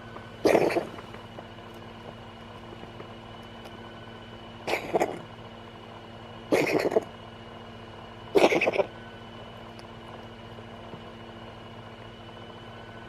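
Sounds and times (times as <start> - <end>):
cat coughing: 0.4 - 1.0, 4.6 - 5.3, 6.5 - 7.1, 8.3 - 9.0.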